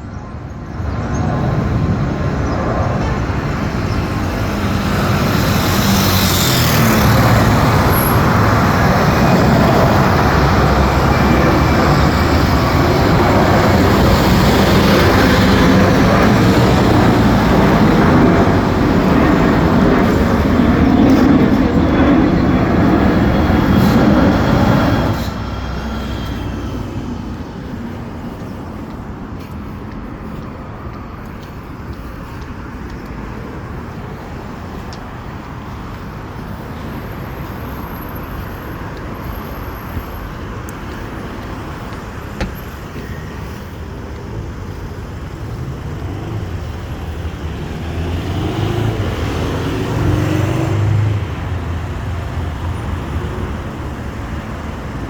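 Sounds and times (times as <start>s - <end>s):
steady traffic hum: 0.0s - 55.0s
vehicle passing: 0.8s - 31.0s, 44.4s - 55.0s.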